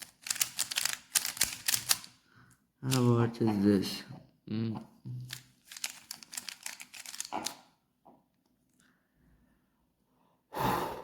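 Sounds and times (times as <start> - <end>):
puzzle cube plastic clicks: 0.0 - 2.2, 5.3 - 7.7.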